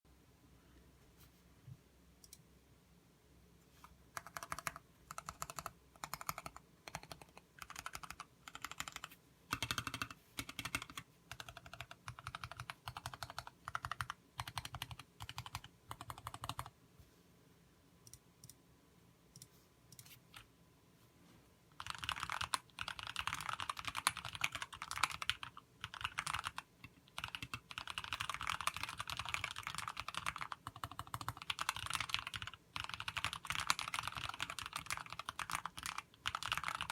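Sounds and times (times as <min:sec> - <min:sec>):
mechanical keyboard typing: 0:04.1 - 0:16.7, 0:21.8 - 0:36.9.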